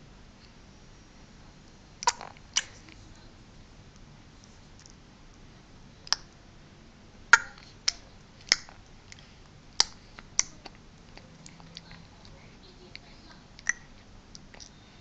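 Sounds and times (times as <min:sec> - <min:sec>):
baby making clicking sounds: 0:09.8 - 0:10.6.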